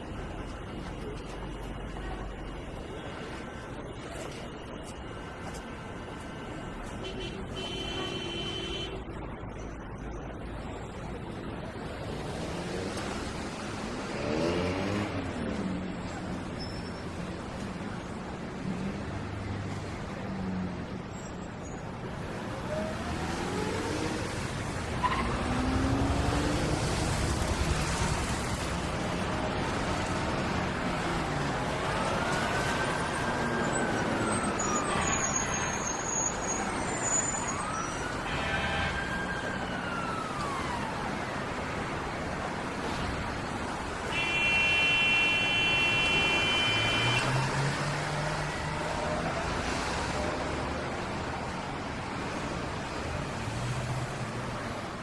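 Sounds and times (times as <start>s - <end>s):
traffic hum: 0.0s - 55.0s
siren wailing: 31.4s - 41.5s.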